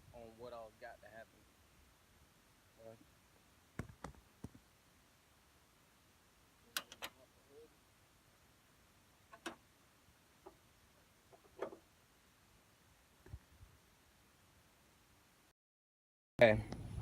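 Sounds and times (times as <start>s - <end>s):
faint sharp clicks and knocks: 9.3s - 9.6s.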